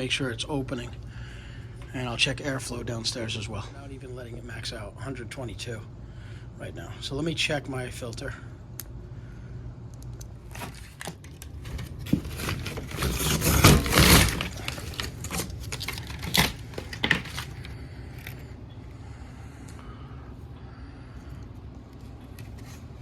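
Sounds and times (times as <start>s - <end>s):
blower humming: 8.3s - 23.0s
air filter scraping: 10.5s - 18.4s.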